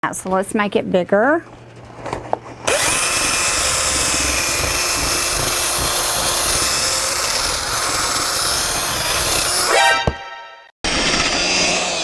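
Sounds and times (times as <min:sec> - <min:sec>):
electric drill running: 0:02.7 - 0:10.2.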